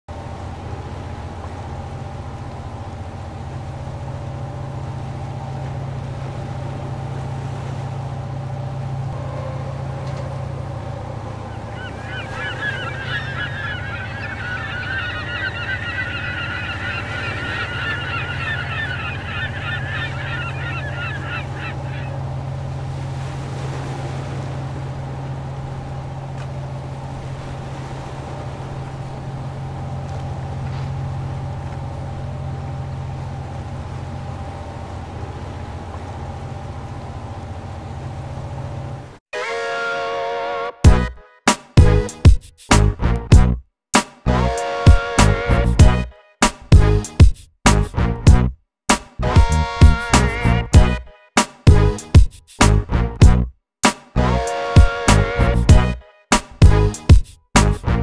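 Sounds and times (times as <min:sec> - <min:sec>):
low machine hum: 0:00.1 - 0:23.2
birds calling rapidly: 0:11.0 - 0:22.3.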